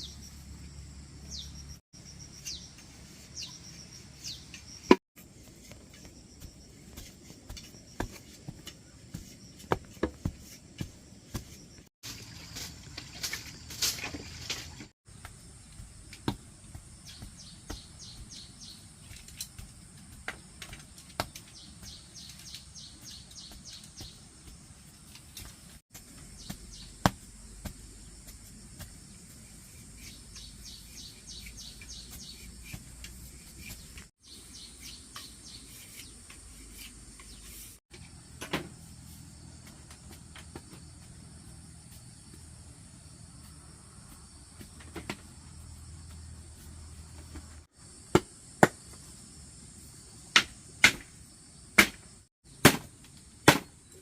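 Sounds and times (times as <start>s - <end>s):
high insect hiss: 2.0s - 52.3s.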